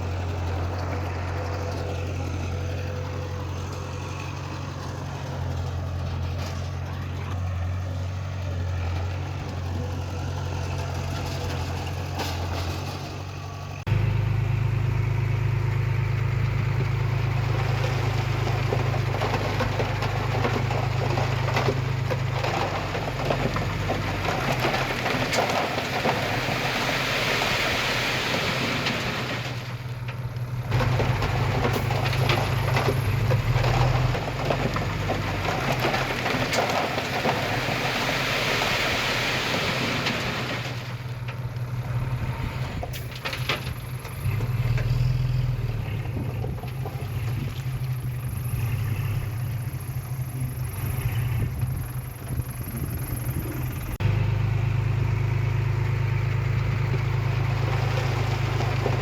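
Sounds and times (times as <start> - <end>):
heavy diesel engines running: 0.0 - 59.0
gritty rattling noise: 28.8 - 54.0.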